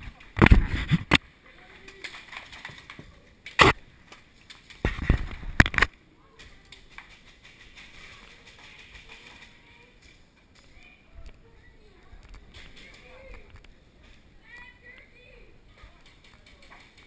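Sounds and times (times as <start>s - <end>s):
sharp clicks and knocks: 15.8s - 17.0s.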